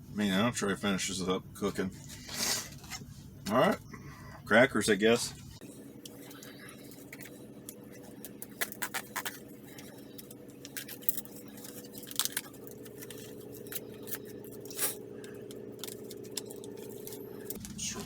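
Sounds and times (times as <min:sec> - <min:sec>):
steady low hum: 0:00.0 - 0:18.0
plastic pouch crinkling: 0:05.8 - 0:17.7.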